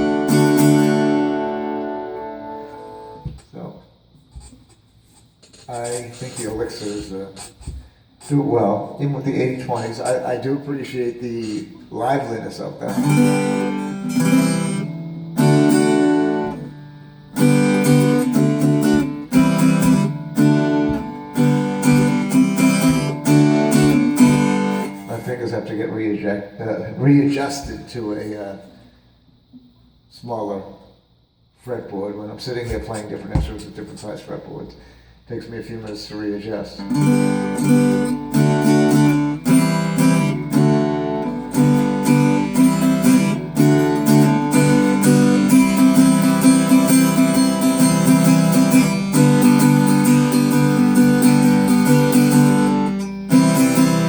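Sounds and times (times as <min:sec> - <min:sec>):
acoustic guitar strummed: 0:00.0 - 0:03.4, 0:11.2 - 0:25.8, 0:36.8 - 0:54.0.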